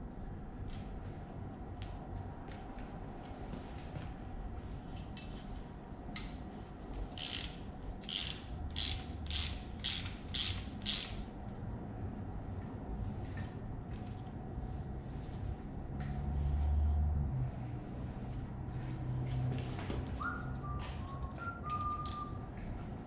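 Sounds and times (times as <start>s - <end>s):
ratchet wrench clicking: 7.0s - 11.3s.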